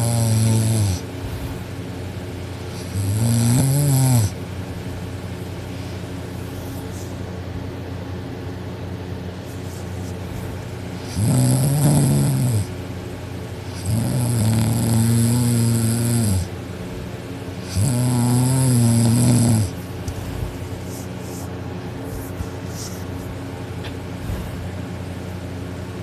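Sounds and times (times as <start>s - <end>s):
person snoring heavily: 0.0s - 1.1s, 2.7s - 4.4s, 11.0s - 12.7s, 13.7s - 16.5s, 17.6s - 19.8s
steady low hum: 0.0s - 26.0s.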